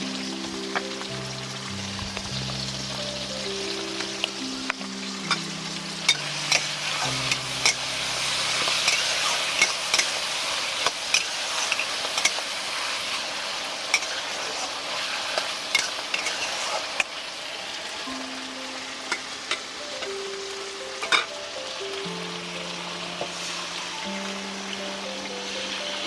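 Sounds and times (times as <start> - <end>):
food sizzling in a pan: 0.0 - 26.0
spatula scraping a pan: 5.3 - 17.2.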